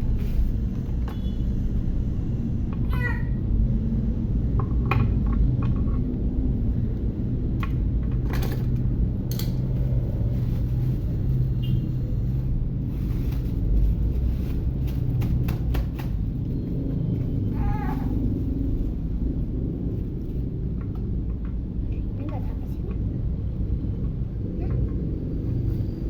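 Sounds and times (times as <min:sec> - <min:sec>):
low rumble: 0:00.0 - 0:15.1, 0:16.1 - 0:26.0.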